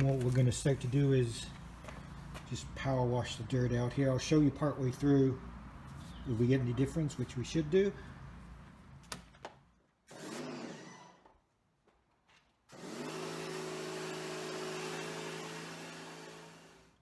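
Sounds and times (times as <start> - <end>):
pressure washer pump motor: 10.1 - 11.2, 12.7 - 16.9.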